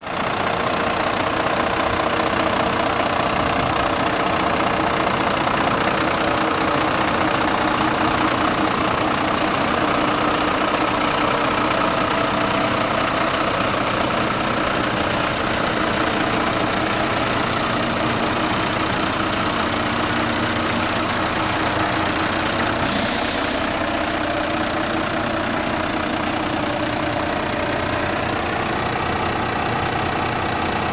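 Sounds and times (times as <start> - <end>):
diesel truck engine idling: 0.0 - 30.9
short hiss: 22.6 - 23.7.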